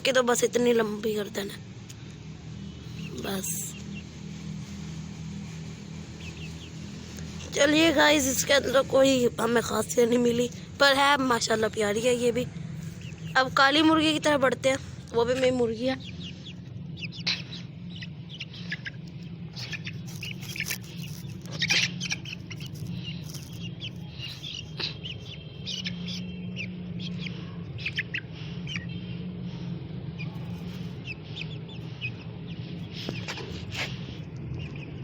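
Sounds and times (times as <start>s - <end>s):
steady low hum: 0.0s - 35.0s
young chickens peeping: 6.2s - 8.7s, 12.8s - 14.0s, 15.1s - 35.0s.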